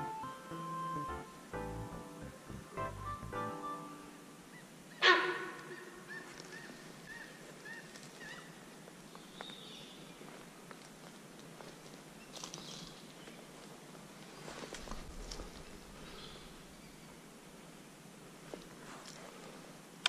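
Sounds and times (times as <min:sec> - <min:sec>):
faint high bird calls: 0:03.0 - 0:10.2
deer alarm honk: 0:05.0 - 0:06.0.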